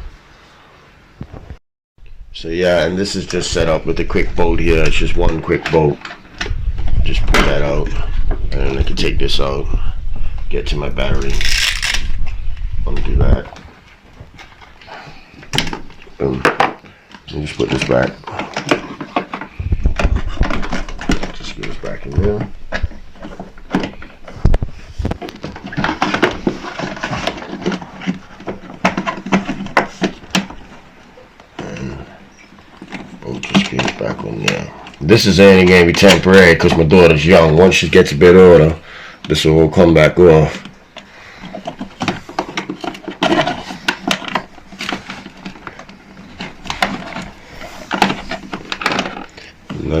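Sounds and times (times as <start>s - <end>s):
hard toy parts knocking and clattering: 11.2s - 12.1s, 15.5s - 16.8s, 41.4s - 49.4s
plastic knocks and clatter: 15.4s - 30.9s, 40.4s - 49.9s.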